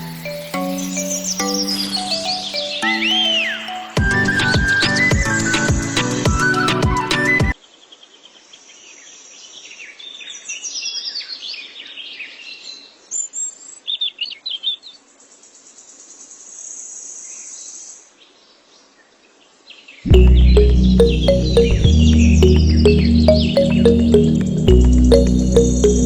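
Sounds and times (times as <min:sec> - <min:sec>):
high bird trill: 0:00.0 - 0:04.5, 0:20.1 - 0:26.0
birds chirping: 0:20.1 - 0:26.0.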